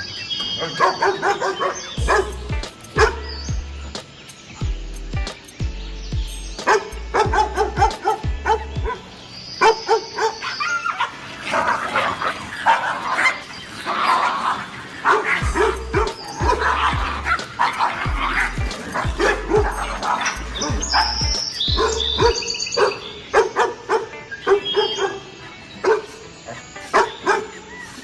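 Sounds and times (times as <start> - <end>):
dog barking and yipping: 0.0 - 3.3, 6.6 - 28.0
background music with bass line: 1.9 - 9.2, 15.3 - 22.6.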